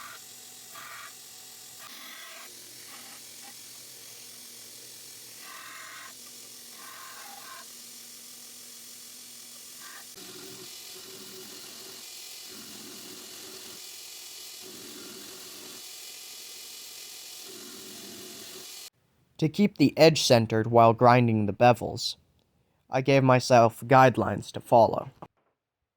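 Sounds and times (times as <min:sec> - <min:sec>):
belt grinder grinding steel: 0:00.0 - 0:18.9.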